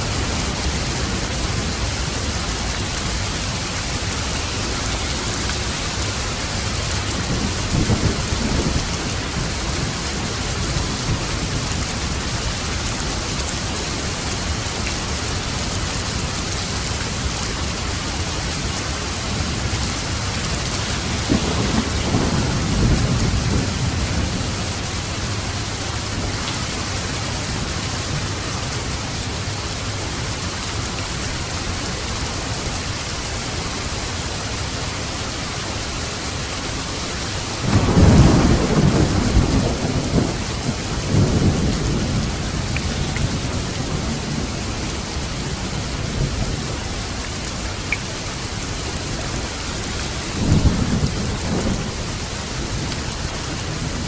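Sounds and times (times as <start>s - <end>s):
thunder rumbling: 0.0s - 14.6s, 17.2s - 29.0s, 37.5s - 47.9s, 48.6s - 54.0s
heavy rain: 0.0s - 54.0s.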